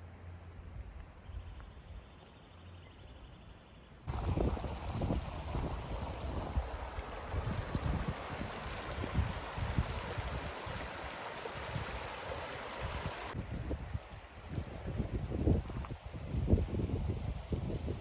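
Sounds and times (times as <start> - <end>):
wind buffeting microphone: 4.1 - 12.1, 12.8 - 18.0
rushing water: 4.1 - 16.0.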